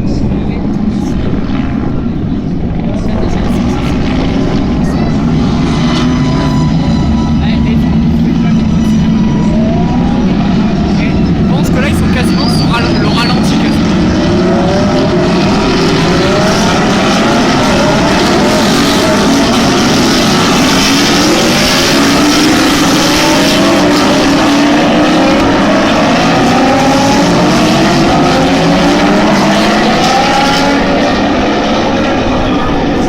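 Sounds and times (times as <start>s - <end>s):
race car engines revving: 0.0s - 33.0s.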